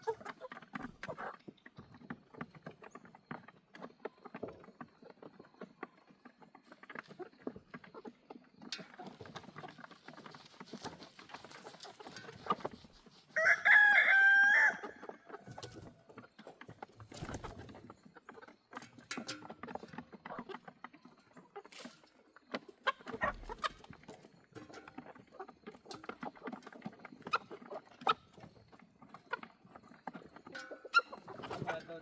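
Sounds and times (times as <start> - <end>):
chickens clucking: 0.0 - 32.0.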